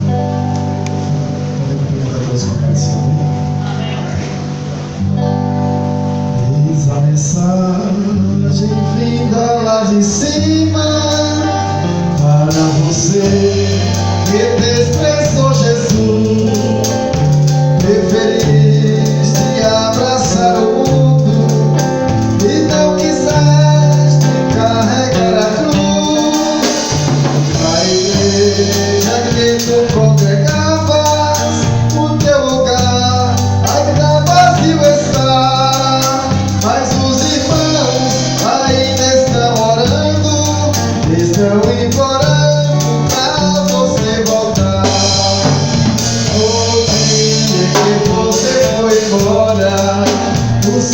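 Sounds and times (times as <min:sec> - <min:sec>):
bass line: 0:00.0 - 0:50.9
guitar: 0:00.0 - 0:50.9
drums: 0:10.0 - 0:50.9
people singing: 0:12.2 - 0:50.9.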